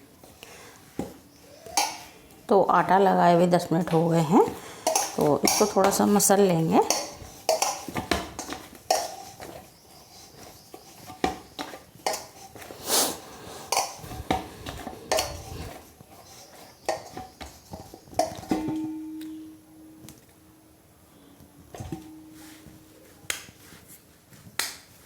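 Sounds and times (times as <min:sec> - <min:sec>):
dough being kneaded by hand: 0:00.0 - 0:18.7
dish knocking and clinking: 0:18.2 - 0:20.2, 0:21.8 - 0:22.8.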